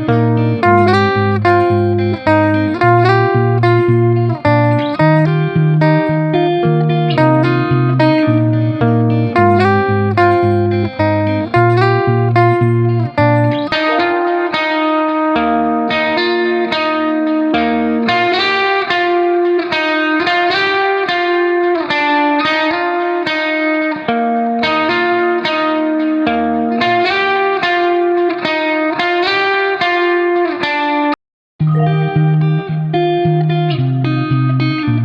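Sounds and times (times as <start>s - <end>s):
plucked guitar melody: 0.0s - 35.0s.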